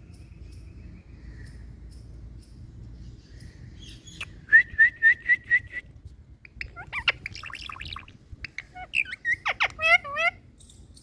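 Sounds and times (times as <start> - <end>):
parakeet chattering calls: 6.4 - 10.5.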